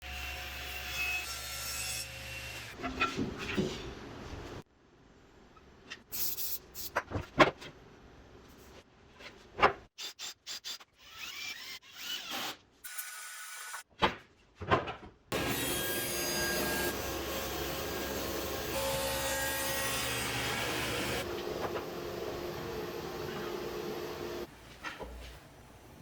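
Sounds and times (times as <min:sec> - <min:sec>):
table saw cutting wood: 0:15.3 - 0:24.5.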